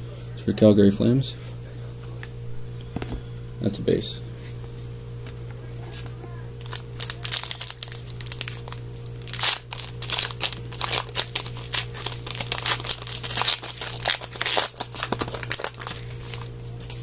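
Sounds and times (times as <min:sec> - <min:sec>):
plastic wrapper crinkling and tearing: 0:06.6 - 0:17.0.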